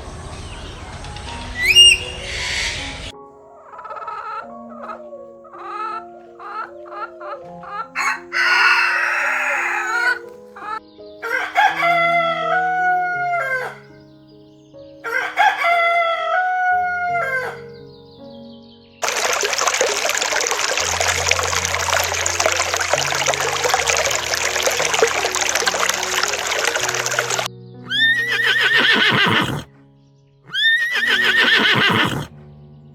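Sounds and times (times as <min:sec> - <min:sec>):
background music: 0:00.0 - 0:32.9
harsh squawk: 0:01.6 - 0:14.0, 0:15.1 - 0:17.8, 0:25.9 - 0:29.7, 0:30.5 - 0:32.4
rooster crowing: 0:03.4 - 0:14.0, 0:15.0 - 0:17.8, 0:26.0 - 0:29.6, 0:30.5 - 0:32.3.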